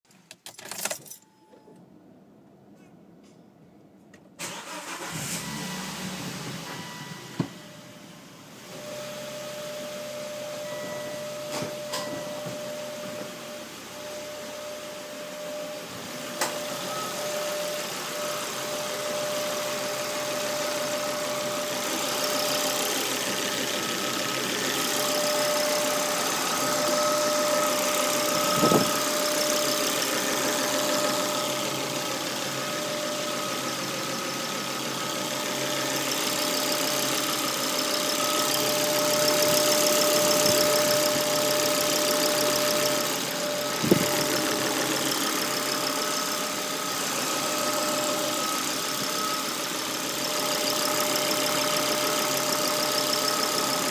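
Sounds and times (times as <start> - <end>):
car engine idling: 4.4 - 8.8, 15.1 - 53.9
high-pitched whine: 4.6 - 53.9.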